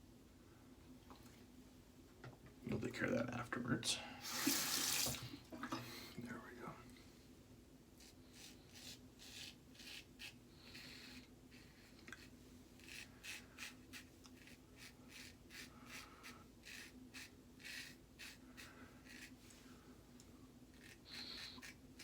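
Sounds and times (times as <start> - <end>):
razor cutting stubble: 8.0 - 19.4, 20.7 - 22.0.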